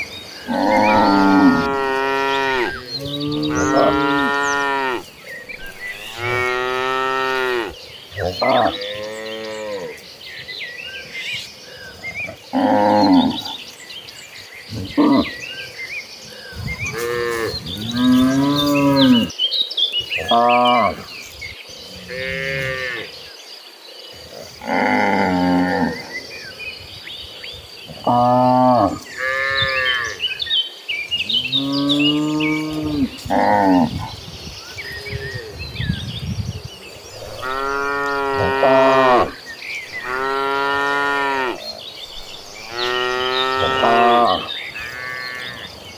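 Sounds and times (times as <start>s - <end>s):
small birds chirping: 0.0s - 45.9s
cattle mooing: 0.5s - 5.1s, 5.7s - 10.0s, 37.2s - 39.4s, 40.0s - 41.6s, 42.5s - 45.7s.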